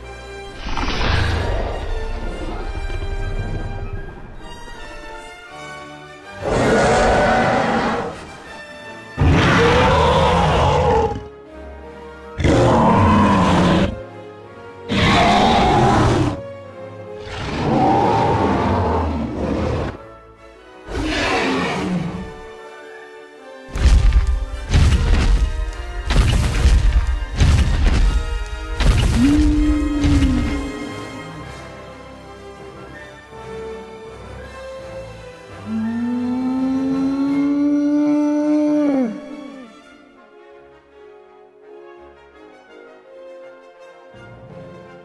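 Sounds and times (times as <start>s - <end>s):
music: 0.0s - 45.0s
recorded dinosaur roars: 6.4s - 8.3s, 9.2s - 11.3s, 12.4s - 14.0s, 14.9s - 16.4s, 17.2s - 20.0s, 29.2s - 31.4s, 35.6s - 39.8s.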